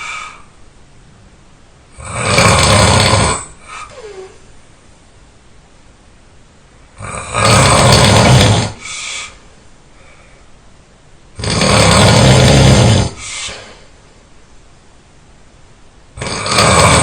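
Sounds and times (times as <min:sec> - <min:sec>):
person snoring: 0:01.9 - 0:04.4, 0:07.0 - 0:09.4, 0:11.4 - 0:13.8, 0:16.2 - 0:17.0.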